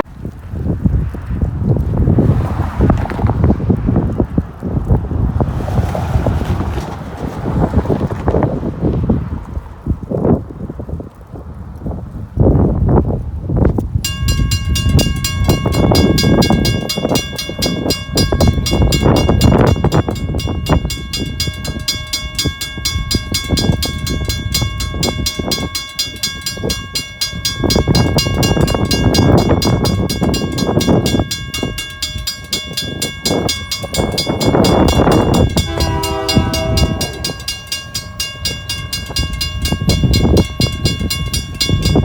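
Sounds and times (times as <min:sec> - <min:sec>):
wind buffeting microphone: 0:00.0 - 0:42.0
railroad crossing bell ringing: 0:14.0 - 0:42.0.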